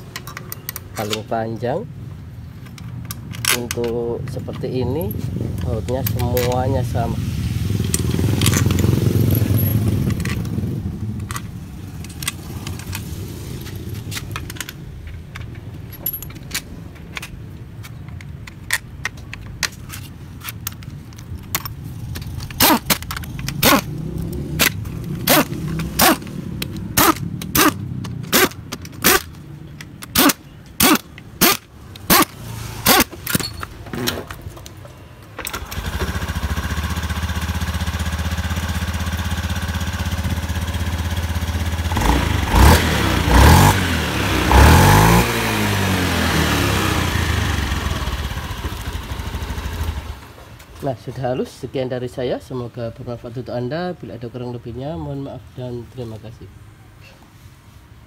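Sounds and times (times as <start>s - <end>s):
sharp metal clicks: 14.0s - 34.8s
scooter engine idling: 35.5s - 42.4s, 45.8s - 50.2s.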